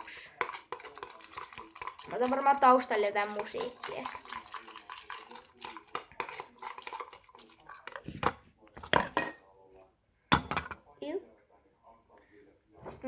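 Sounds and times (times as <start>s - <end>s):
utensil scraping a bowl: 0.0s - 2.4s, 3.2s - 8.4s.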